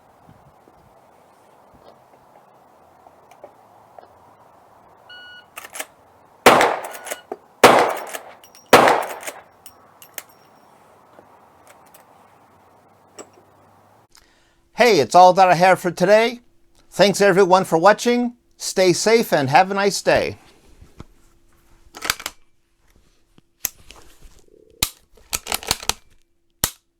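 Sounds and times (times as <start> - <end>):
metallic clicks of rifle action: 5.5 - 10.5, 21.9 - 22.4, 24.7 - 26.9
rifle shots with echo: 6.4 - 9.5.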